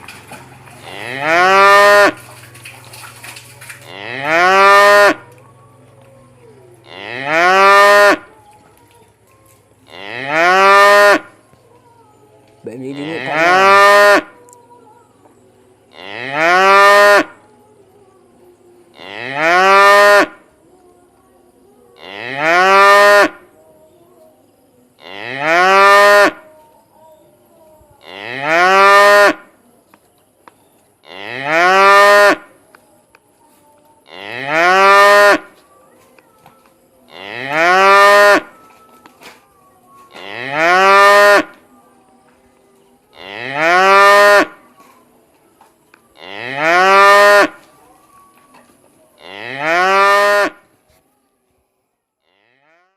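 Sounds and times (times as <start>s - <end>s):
cow mooing: 0.8s - 2.3s, 3.8s - 5.3s, 6.8s - 8.3s, 9.9s - 11.3s, 12.9s - 14.4s, 15.9s - 17.4s, 18.9s - 20.4s, 22.0s - 23.4s, 25.0s - 26.4s, 28.0s - 29.5s, 31.0s - 32.5s, 34.1s - 35.5s, 37.1s - 38.6s, 40.1s - 41.6s, 43.1s - 44.6s, 46.2s - 47.6s, 49.2s - 50.6s.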